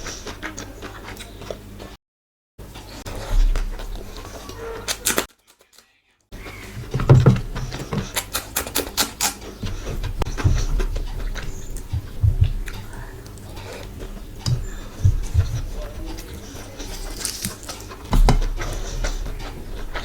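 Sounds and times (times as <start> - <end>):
chewing with wet mouth smacks: 6.4 - 20.0.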